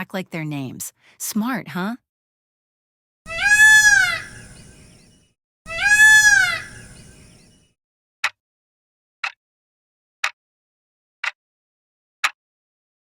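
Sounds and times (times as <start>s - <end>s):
peacock calling: 3.3s - 7.6s.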